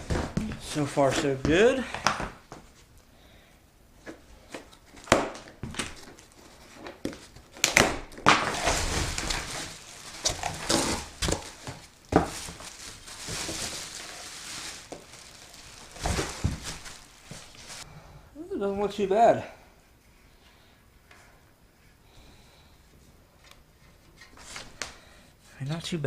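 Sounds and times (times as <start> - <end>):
plastic wrap crinkling: 4.9 - 17.8.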